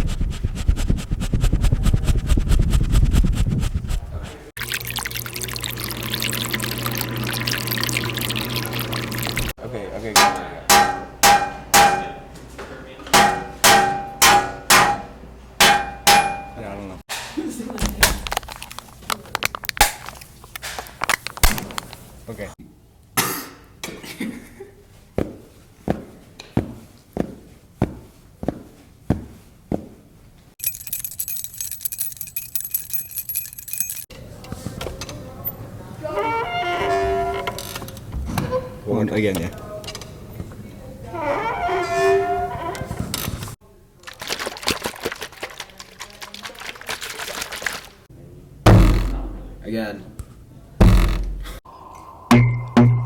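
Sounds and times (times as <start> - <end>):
bright metallic jangling: 30.6 - 34.1
dull thumps: 48.7 - 49.6, 50.8 - 51.6
metal object struck ringing: 52.3 - 53.0.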